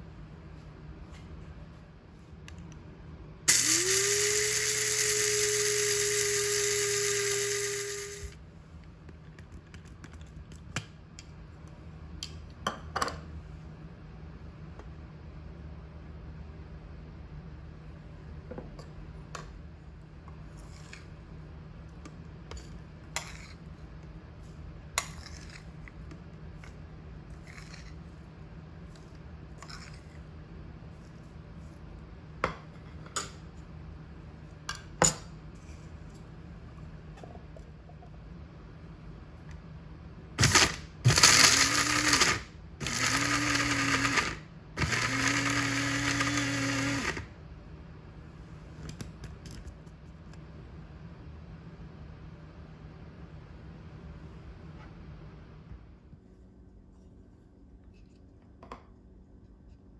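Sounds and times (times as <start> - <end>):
electric mixer grinder running: 3.5 - 8.4, 40.4 - 47.3.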